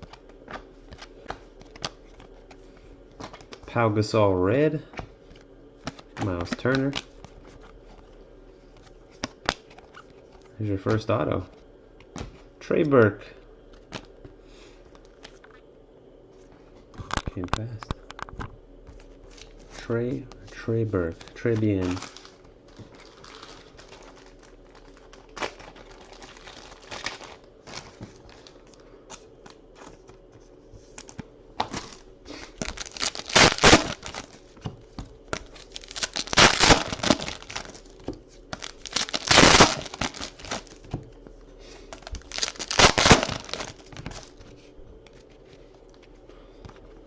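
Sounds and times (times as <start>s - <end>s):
card wrappers crinkling: 0.0s - 3.8s, 5.3s - 8.1s, 18.9s - 40.9s, 41.9s - 46.2s
wrapper tearing rips: 21.2s - 28.6s, 31.6s - 34.4s, 35.4s - 37.8s, 38.5s - 40.8s, 42.0s - 44.3s.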